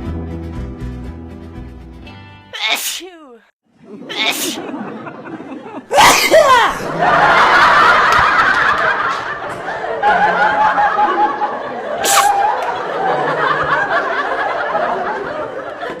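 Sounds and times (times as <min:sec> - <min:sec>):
people laughing and giggling: 0:03.8 - 0:16.0.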